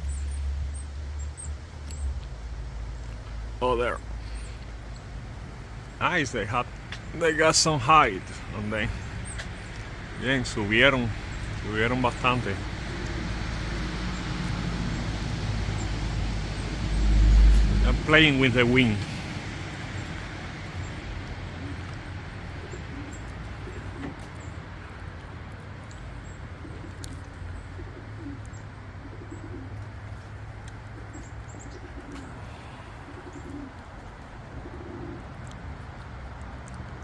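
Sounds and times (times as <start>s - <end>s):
pigeons cooing: 6.8s - 17.8s, 18.6s - 25.1s, 25.9s - 35.7s.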